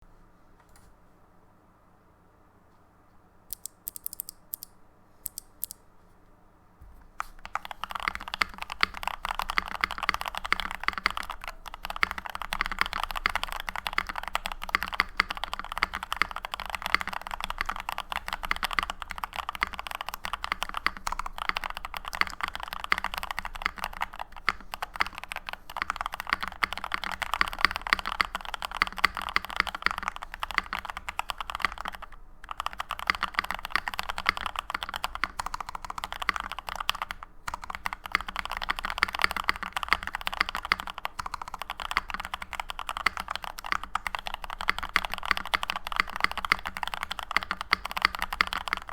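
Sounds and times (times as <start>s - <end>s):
typing on mechanical keyboard: 3.5s - 4.7s, 7.2s - 48.9s.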